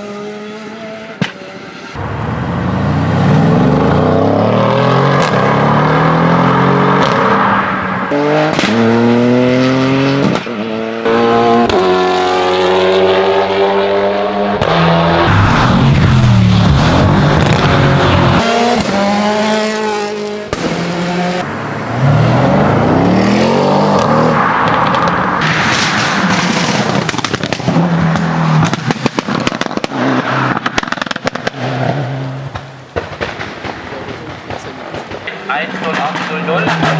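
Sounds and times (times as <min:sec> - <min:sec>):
car engine accelerating: 0:00.0 - 0:36.9
exhaust pops: 0:14.6 - 0:19.6, 0:23.9 - 0:36.9.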